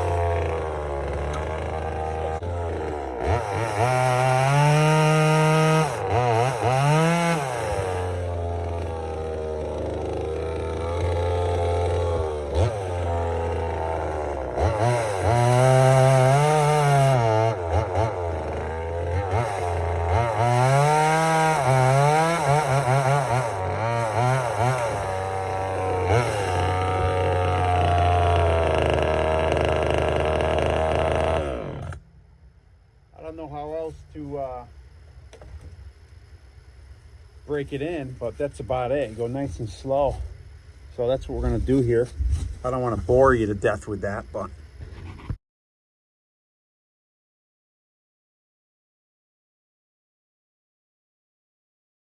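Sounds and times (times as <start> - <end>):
chainsaw revving: 0.0 - 32.2.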